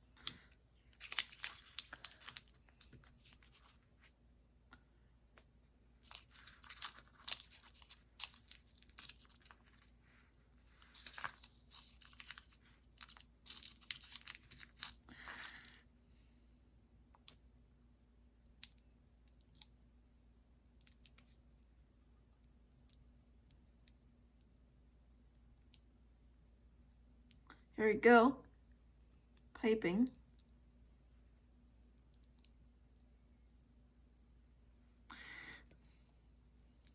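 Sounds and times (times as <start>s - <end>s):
plastic parts rustling and clicking: 0.0s - 3.8s, 6.0s - 15.8s.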